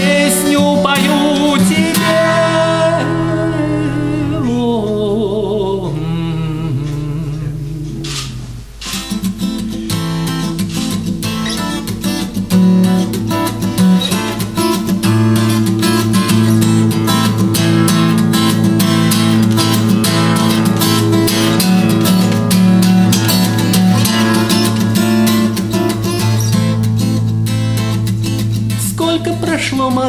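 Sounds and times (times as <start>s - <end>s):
bass: 0.0s - 8.7s
acoustic guitar strumming: 0.0s - 30.0s
band playing: 17.4s - 26.2s.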